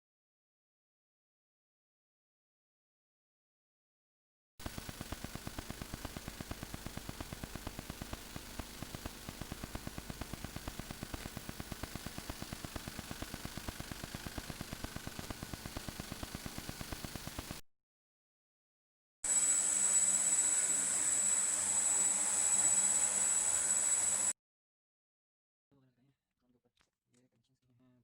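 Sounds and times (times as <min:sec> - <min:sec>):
electronic static hiss: 0:04.6 - 0:17.6, 0:19.3 - 0:24.3.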